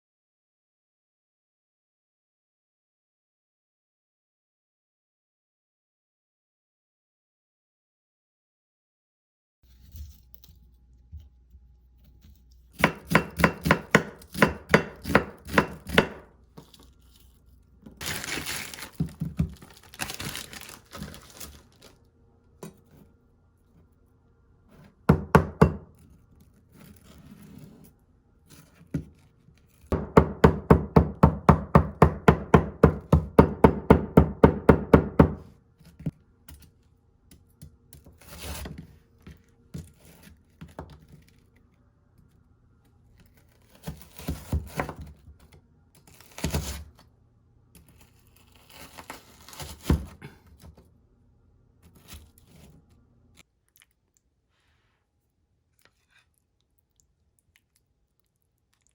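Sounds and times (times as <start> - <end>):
knife chopping on cutting board: 12.8 - 16.3, 25.1 - 25.9, 29.9 - 35.5.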